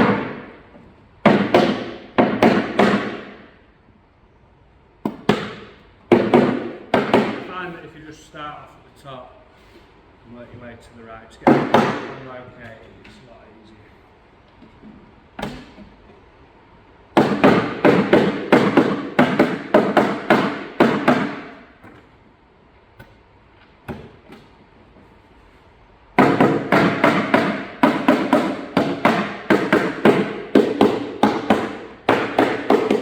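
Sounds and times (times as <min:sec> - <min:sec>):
rubber mallet knocking: 0:26.2 - 0:33.0.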